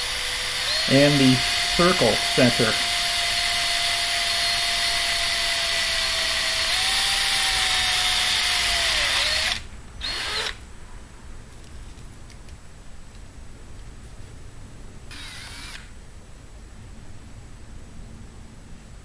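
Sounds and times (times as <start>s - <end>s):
electric drill drilling through metal: 0.0s - 10.6s, 15.1s - 15.9s.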